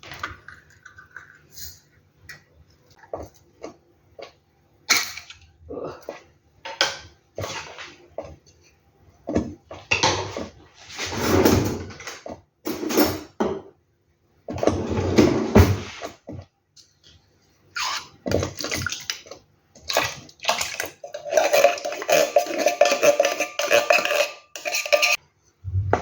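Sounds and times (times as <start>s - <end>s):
pots and dishes clinking: 20.5s - 25.2s.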